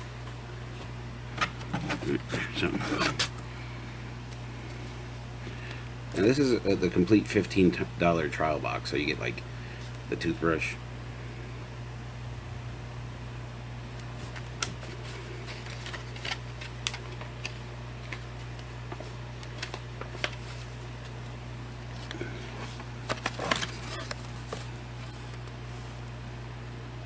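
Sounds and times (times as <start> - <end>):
steady low hum: 0.0 - 27.0
packaging rustling: 14.0 - 25.9.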